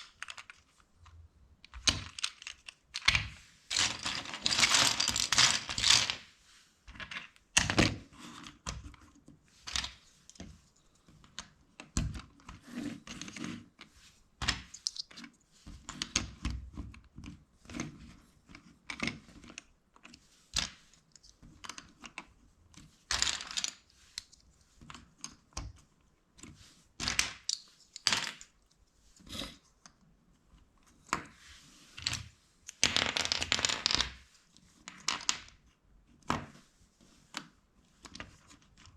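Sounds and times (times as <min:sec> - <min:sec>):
plastic bricks clicking and clattering: 0:00.0 - 0:06.3, 0:14.4 - 0:15.2, 0:23.1 - 0:24.3, 0:27.0 - 0:28.6, 0:32.0 - 0:34.2, 0:34.9 - 0:35.6.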